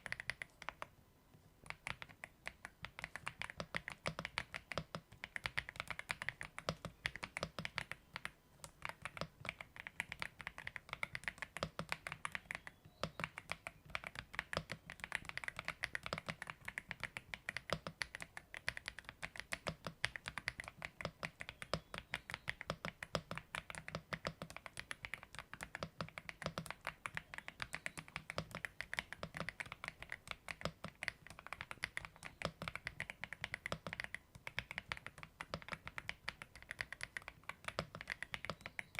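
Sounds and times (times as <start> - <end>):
mechanical keyboard typing: 0.0 - 0.9, 1.6 - 38.9.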